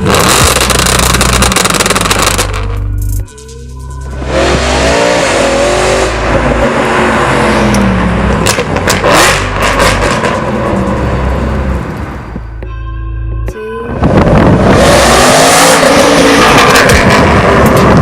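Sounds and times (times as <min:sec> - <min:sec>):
car engine revving hard: 0:00.0 - 0:02.7, 0:04.2 - 0:12.2, 0:14.1 - 0:18.0
exhaust crackles and pops: 0:00.0 - 0:02.8, 0:08.4 - 0:10.9.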